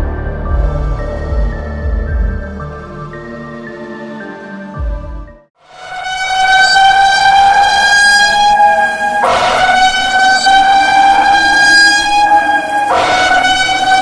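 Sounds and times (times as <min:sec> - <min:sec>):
buzzy horn-like alarm tone: 0:05.6 - 0:14.0.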